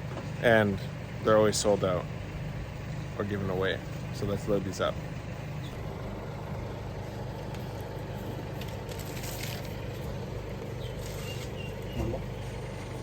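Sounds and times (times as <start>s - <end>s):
vehicle engine idling: 0.0s - 13.0s
faint rustles: 7.1s - 13.0s.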